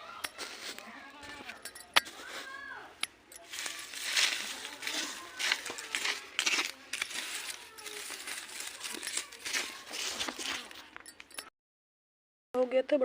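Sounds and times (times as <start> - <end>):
scraping and rustling handling noise: 0.0 - 11.5
small clicks and clinks: 1.3 - 2.2, 5.3 - 11.5.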